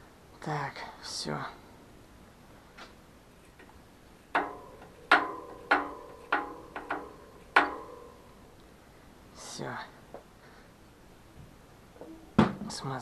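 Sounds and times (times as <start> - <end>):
metal bicycle parts knocking: 4.3 - 8.5.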